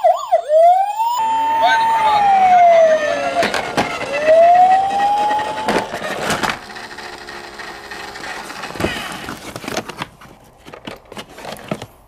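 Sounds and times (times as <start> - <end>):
toy electronic siren wailing: 0.0 - 7.2.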